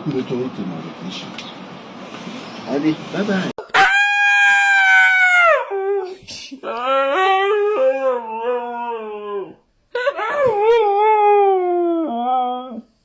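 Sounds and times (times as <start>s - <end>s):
dog howling: 3.6s - 12.9s.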